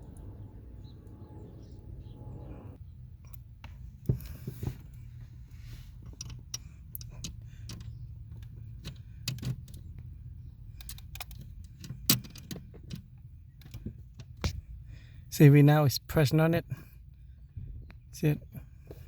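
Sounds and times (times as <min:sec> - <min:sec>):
steady low hum: 0:00.0 - 0:15.4
small metallic clicks and taps: 0:06.0 - 0:10.1, 0:10.7 - 0:14.6.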